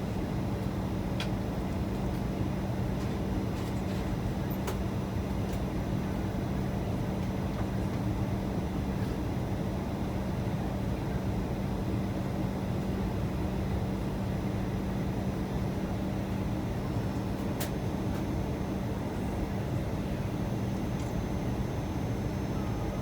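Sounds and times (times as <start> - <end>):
airliner cabin roar: 12.2 - 23.0.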